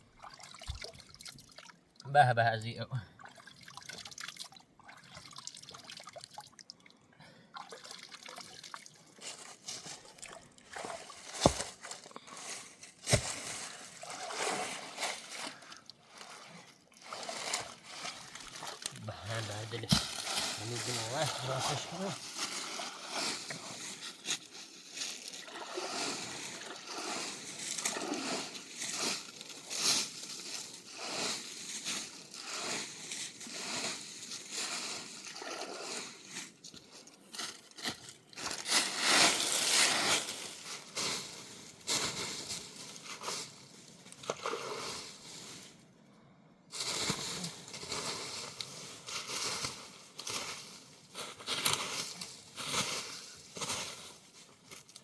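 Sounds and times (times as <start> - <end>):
water sloshing and splashing: 0.1 - 2.0, 3.2 - 36.4.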